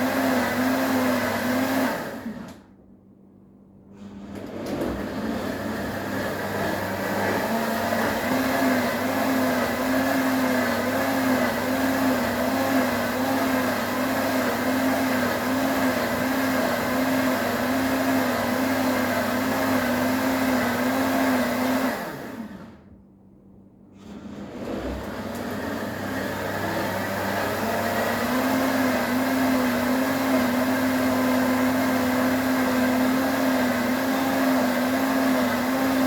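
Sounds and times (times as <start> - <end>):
blender motor running: 0.0 - 2.6, 4.4 - 22.9, 24.4 - 36.0.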